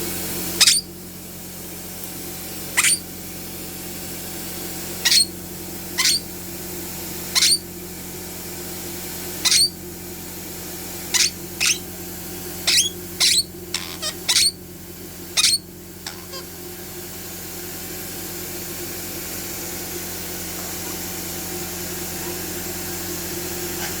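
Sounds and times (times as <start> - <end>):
pet squeaking: 0.6 - 0.9, 2.8 - 3.1, 5.0 - 5.4, 6.0 - 6.3, 7.3 - 7.7, 9.4 - 9.8, 11.1 - 11.9, 12.6 - 14.6, 15.4 - 16.4.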